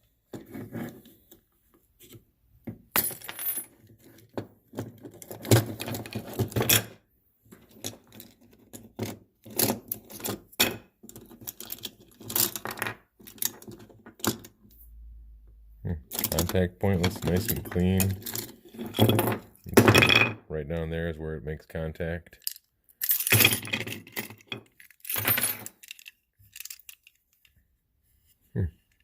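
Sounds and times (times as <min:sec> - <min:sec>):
small parts clicking and clinking: 0:07.6 - 0:14.8, 0:16.1 - 0:20.2, 0:22.3 - 0:27.6.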